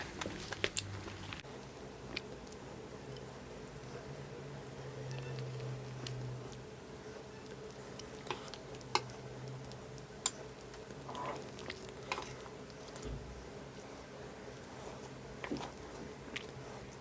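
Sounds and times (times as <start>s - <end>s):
broth simmering and bubbling: 0.0s - 17.0s.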